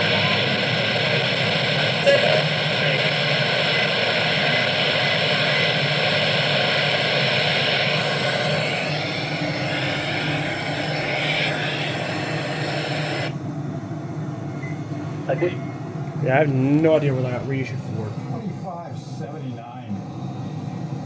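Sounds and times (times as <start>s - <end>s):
radio static hiss: 0.0s - 13.4s
low hum: 0.0s - 18.4s.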